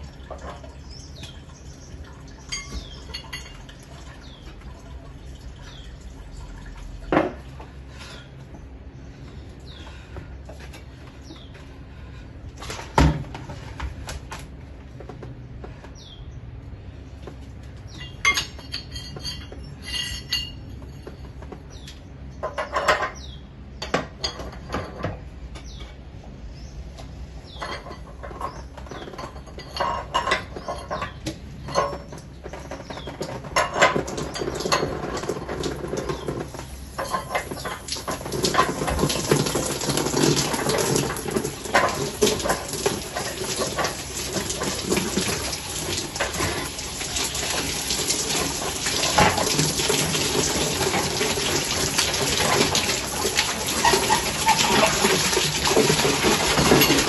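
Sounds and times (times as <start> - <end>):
metal clinks and clanks: 2.4 - 3.8, 17.9 - 21.4, 27.5 - 45.0.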